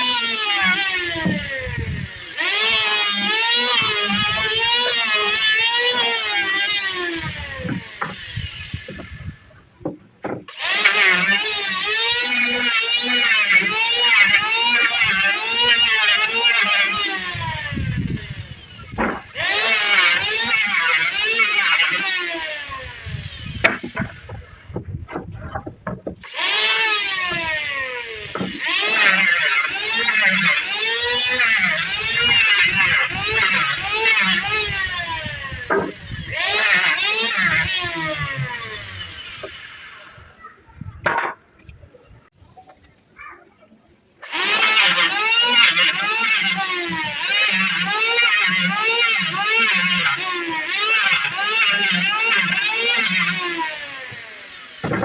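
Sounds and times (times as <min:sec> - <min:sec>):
power saw whine: 0:00.0 - 0:40.4, 0:44.2 - 0:55.0
wood knocks: 0:09.8 - 0:10.5, 0:18.9 - 0:19.3, 0:23.6 - 0:26.2, 0:41.0 - 0:41.8.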